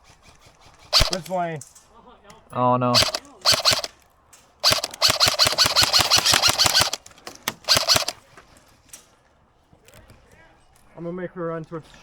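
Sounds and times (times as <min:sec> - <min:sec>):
airsoft gun firing bursts: 0:00.9 - 0:01.4, 0:03.0 - 0:04.0, 0:04.6 - 0:08.2.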